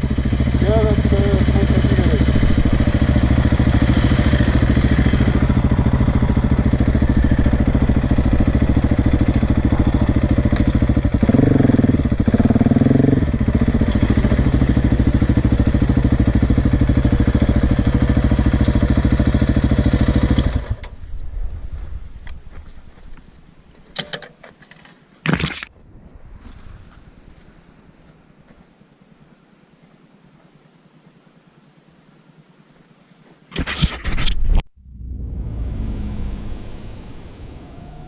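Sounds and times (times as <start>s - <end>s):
dirt bike engine running: 0.0s - 22.5s.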